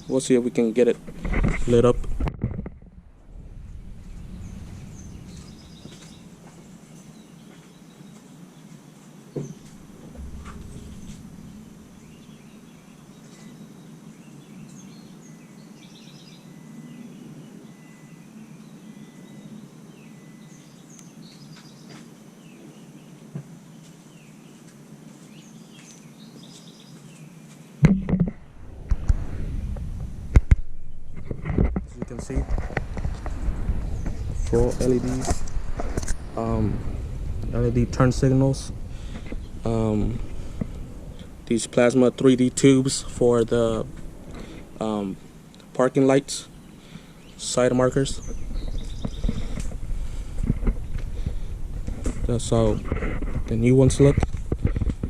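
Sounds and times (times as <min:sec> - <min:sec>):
steady low hum: 0:00.0 - 0:15.2, 0:27.3 - 0:55.0
faint bird chirps: 0:03.6 - 0:27.8, 0:46.5 - 0:49.6.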